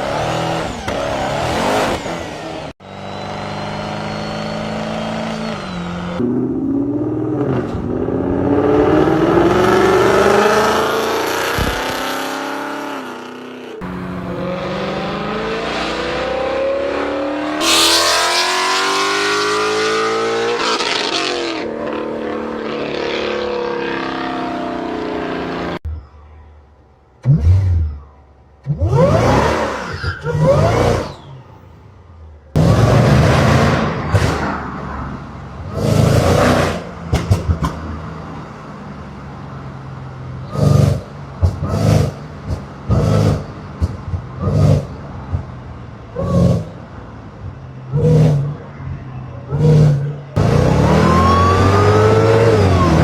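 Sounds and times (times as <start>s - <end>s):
supercharged car engines accelerating: 0.0s - 25.8s, 27.2s - 53.0s.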